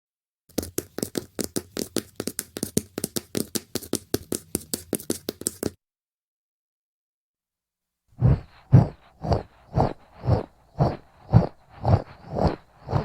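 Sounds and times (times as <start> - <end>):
quick cartoon footsteps: 0.5 - 5.8, 8.2 - 13.0.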